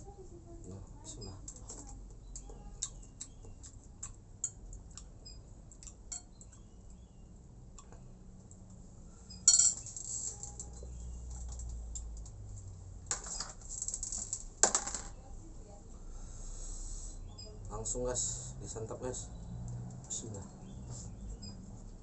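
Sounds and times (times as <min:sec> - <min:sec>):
eating clicks of mouth and plate: 0:01.5 - 0:06.7
sharp eating noise: 0:02.0 - 0:06.8.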